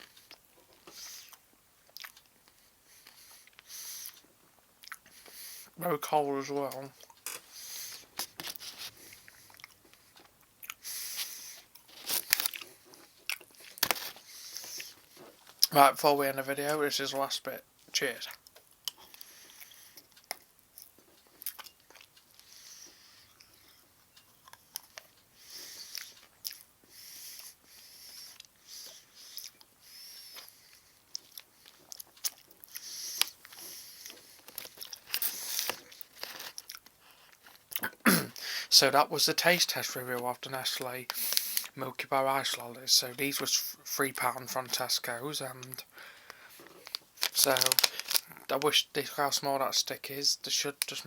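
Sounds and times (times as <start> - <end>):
biting and chewing ice lolly: 0.1 - 5.3, 7.0 - 15.8, 18.3 - 38.5
person biting and chewing: 0.2 - 2.3, 8.2 - 15.7, 31.1 - 38.0.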